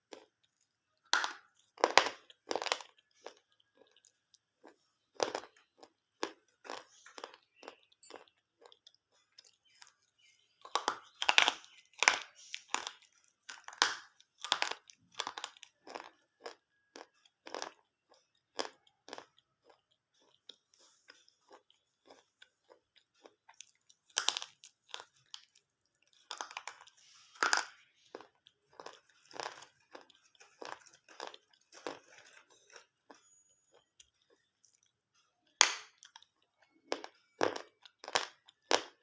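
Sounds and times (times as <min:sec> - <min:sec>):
slate pencils crunched by teeth: 0:10.6 - 0:20.3, 0:23.4 - 0:32.9.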